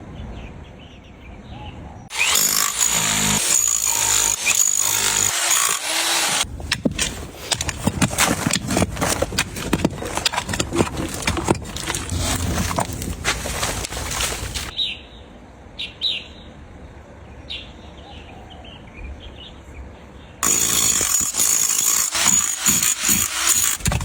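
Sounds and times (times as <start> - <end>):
power tool whining: 2.1 - 14.7, 20.4 - 24.0
metal knocks and clicks: 6.4 - 14.7.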